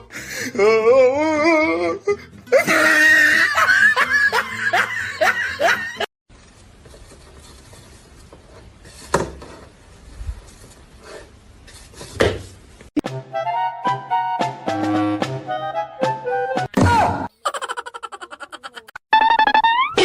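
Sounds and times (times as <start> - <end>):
person laughing: 2.5 - 6.1, 17.3 - 19.0.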